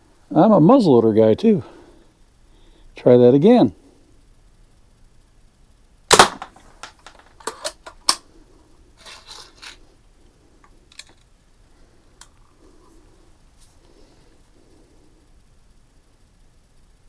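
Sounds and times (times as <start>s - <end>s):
bb gun firing crack: 6.1s - 8.2s
handling rattle: 6.1s - 8.2s, 9.0s - 9.8s.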